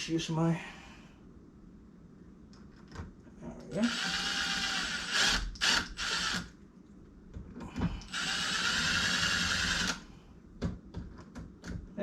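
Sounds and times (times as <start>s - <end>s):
power drill driving screws: 3.9s - 6.5s, 8.1s - 10.0s.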